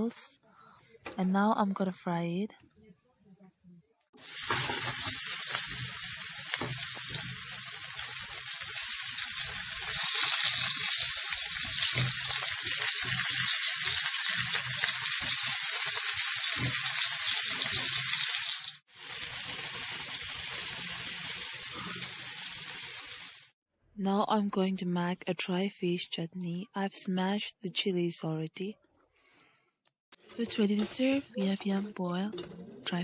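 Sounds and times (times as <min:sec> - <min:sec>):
vegetables sizzling in a pan: 0:04.2 - 0:23.6.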